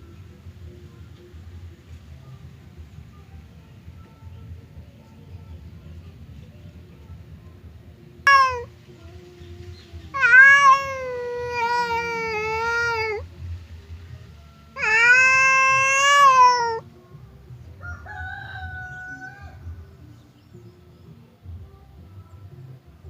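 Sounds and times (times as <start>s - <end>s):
cats yowling: 8.3s - 9.2s, 10.1s - 13.3s, 14.8s - 16.8s.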